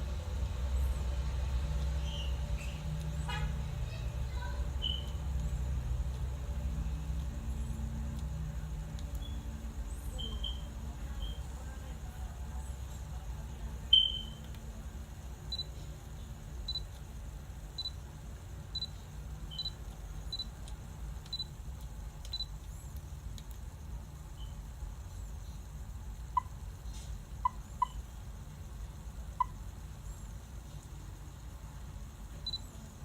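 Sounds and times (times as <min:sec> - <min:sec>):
camera beeping: 0:13.9 - 0:14.6, 0:16.7 - 0:17.0, 0:18.7 - 0:20.5, 0:21.2 - 0:21.6, 0:22.2 - 0:22.5.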